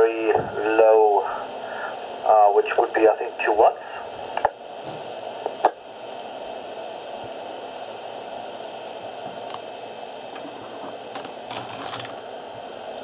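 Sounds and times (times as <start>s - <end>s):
radio hiss: 0.0s - 13.0s.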